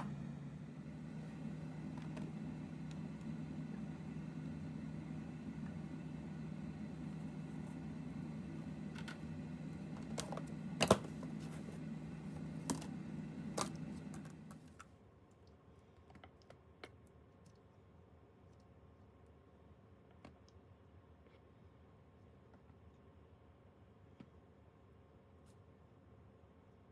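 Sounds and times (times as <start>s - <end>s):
low machine hum: 0.0s - 14.8s.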